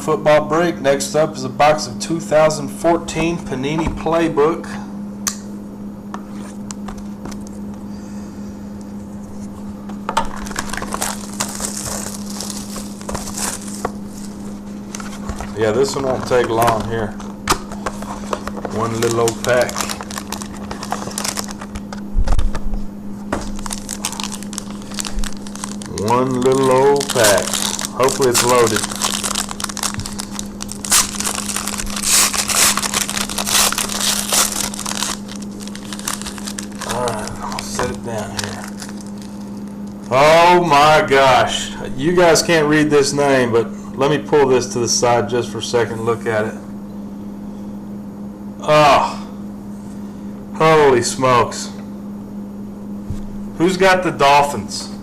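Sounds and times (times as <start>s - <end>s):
low electrical hum: 0.0s - 55.0s
plastic shrink-wrap crinkling: 10.3s - 22.0s, 23.4s - 40.3s.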